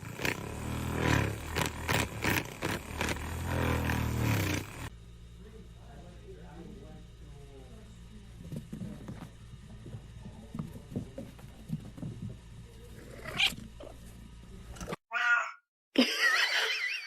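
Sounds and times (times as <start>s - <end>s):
soft knocks and bumps: 8.4s - 12.7s
cat meowing: 15.1s - 15.6s.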